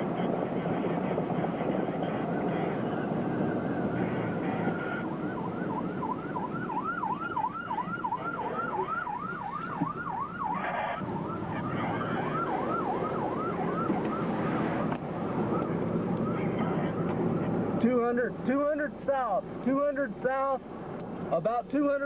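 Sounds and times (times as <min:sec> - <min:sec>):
emergency siren yelping: 0:00.3 - 0:17.6.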